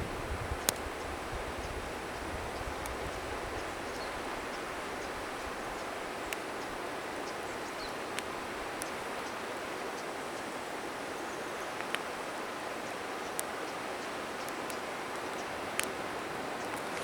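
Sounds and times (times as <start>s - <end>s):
wind buffeting microphone: 0.0s - 6.8s
bonfire crackling and popping: 0.1s - 11.1s, 11.8s - 16.0s
river water rushing: 0.8s - 17.0s.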